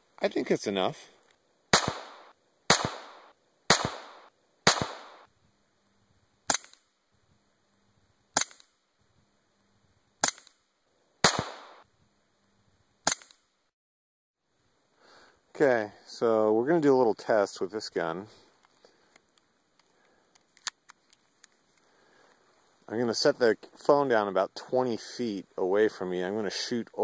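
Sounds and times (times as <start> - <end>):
pistol shots: 1.7 - 5.3, 11.2 - 11.8.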